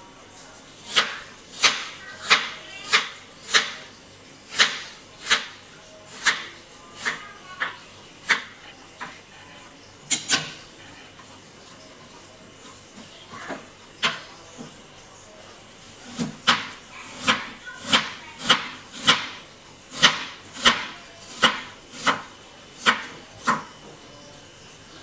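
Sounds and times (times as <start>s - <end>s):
knife chopping on cutting board: 0.9s - 3.9s, 4.5s - 9.2s, 16.0s - 23.7s.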